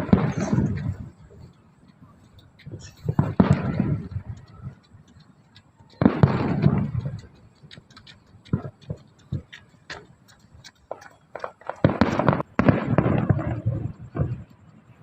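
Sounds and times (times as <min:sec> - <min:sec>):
firework burst: 0:00.0 - 0:01.1, 0:02.8 - 0:04.3, 0:06.0 - 0:07.2, 0:11.6 - 0:14.5
firework crackling and pops: 0:00.0 - 0:01.5, 0:02.6 - 0:04.4, 0:06.0 - 0:07.4, 0:10.9 - 0:14.7.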